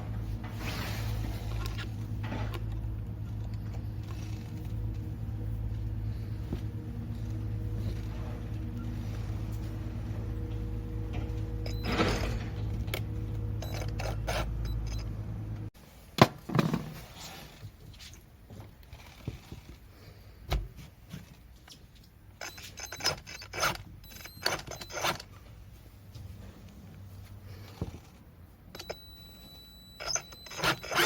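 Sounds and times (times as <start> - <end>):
steady mechanical hum: 0.0 - 16.2, 17.1 - 31.0
metal tools clicking and scraping: 13.6 - 15.1, 22.4 - 25.4.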